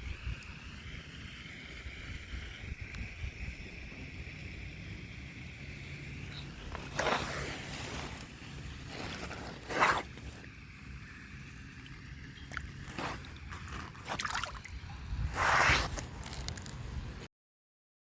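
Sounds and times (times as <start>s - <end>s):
wind buffeting microphone: 0.0s - 9.0s, 12.0s - 17.3s
rushing swishes: 14.0s - 16.2s.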